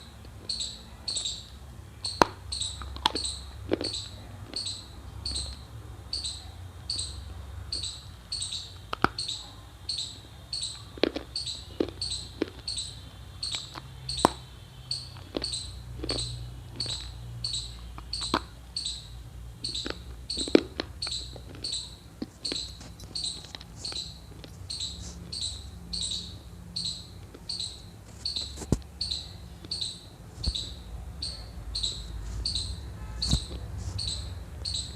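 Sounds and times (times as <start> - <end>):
high repeating chirp: 0.0 - 34.9
crunchy chewing: 2.1 - 5.7, 8.7 - 9.3, 10.2 - 18.8, 19.6 - 26.1.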